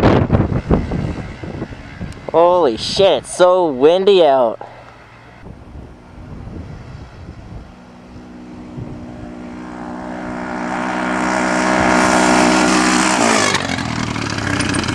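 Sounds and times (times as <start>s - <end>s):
quad engine with raspy exhaust: 0.0s - 14.9s.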